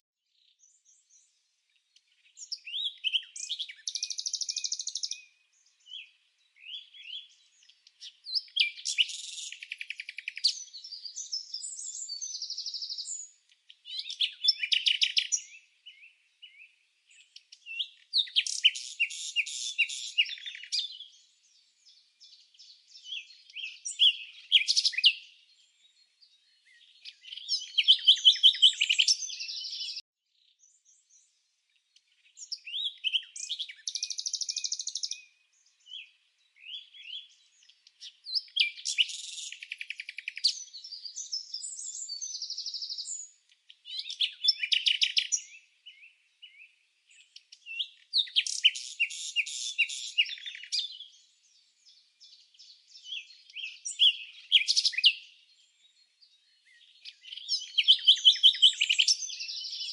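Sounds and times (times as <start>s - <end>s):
songbird chirping and trilling: 0.2s - 59.9s.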